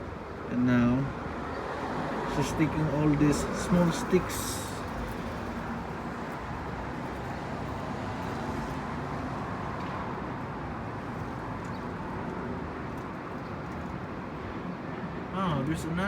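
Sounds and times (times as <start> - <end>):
road traffic hum: 0.0 - 16.0.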